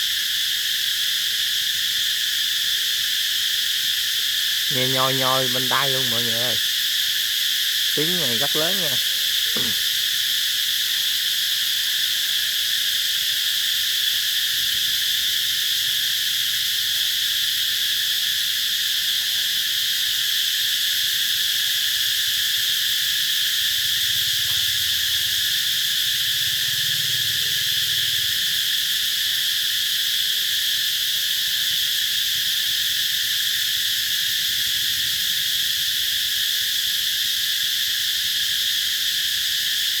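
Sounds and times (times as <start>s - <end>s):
cicadas buzzing: 0.0s - 40.0s.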